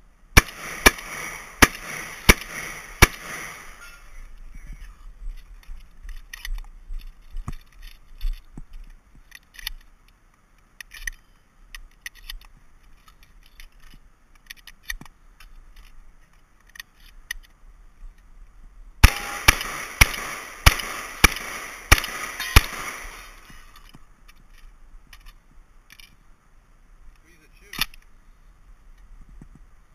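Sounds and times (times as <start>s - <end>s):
shotgun shots: 0.4s - 4.0s, 19.0s - 23.5s
light clicks and clatter: 4.7s - 18.3s.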